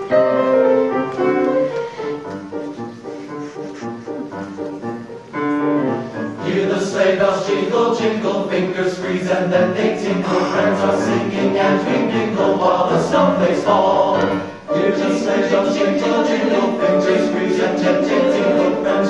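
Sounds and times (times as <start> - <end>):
piano accompaniment: 0.0 - 19.0
men's chorus singing: 6.4 - 19.0.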